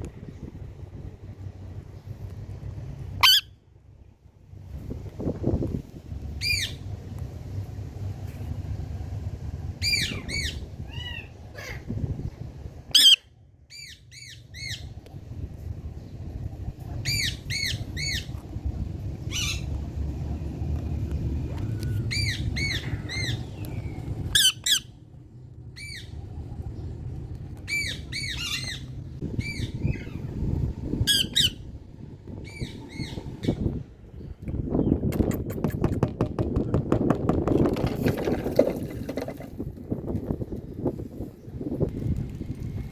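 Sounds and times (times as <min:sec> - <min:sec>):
low rumbling background noise: 0:00.0 - 0:42.9
parakeet squawking: 0:03.2 - 0:03.5, 0:12.9 - 0:14.8, 0:24.3 - 0:25.0, 0:27.7 - 0:30.2, 0:31.0 - 0:31.6.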